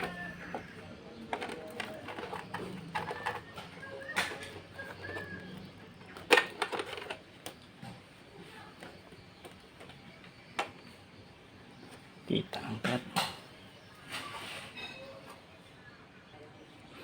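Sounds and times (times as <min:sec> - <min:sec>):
plastic clicks and knocks: 0:00.0 - 0:05.4, 0:06.0 - 0:08.0.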